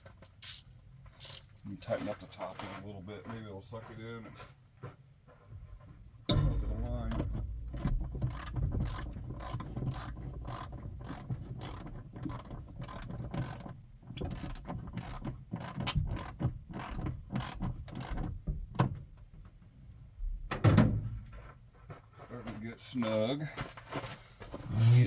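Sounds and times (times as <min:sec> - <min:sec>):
ratchet wrench clicking: 0:00.4 - 0:00.6, 0:01.2 - 0:01.5, 0:08.3 - 0:13.6.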